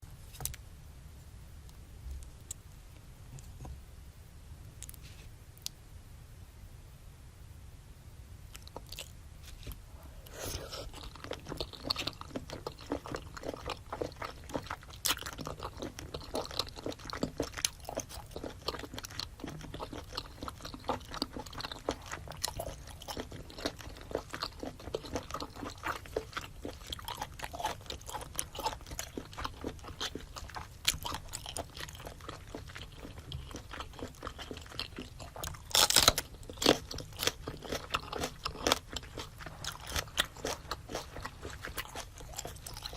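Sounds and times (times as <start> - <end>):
chewing and biting food: 8.5 - 9.2, 10.3 - 42.9.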